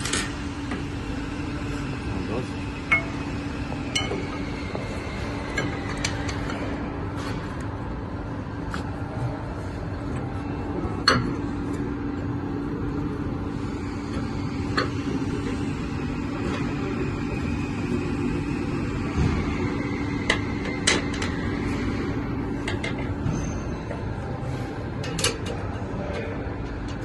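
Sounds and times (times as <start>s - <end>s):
machine hum: 0.0s - 27.0s.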